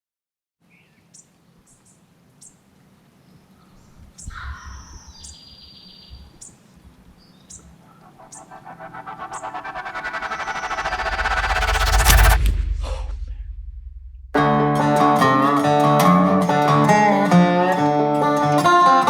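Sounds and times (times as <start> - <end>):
rush of noise: 7.7 - 14.8.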